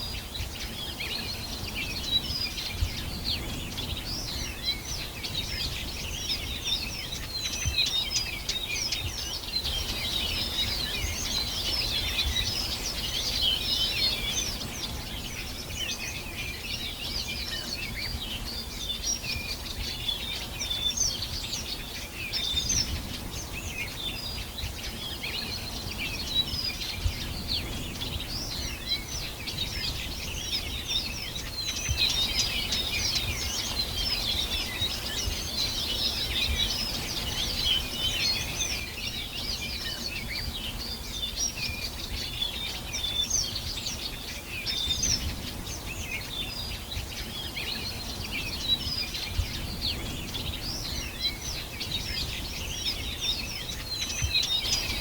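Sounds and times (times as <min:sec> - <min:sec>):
songbirds chirping and trilling: 0:00.0 - 0:55.0.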